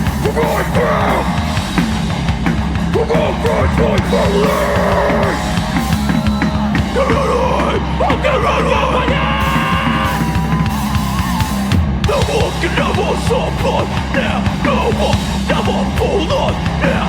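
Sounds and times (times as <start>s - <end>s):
live punk band playing: 0.0s - 17.0s
yelled vocals: 0.0s - 17.0s.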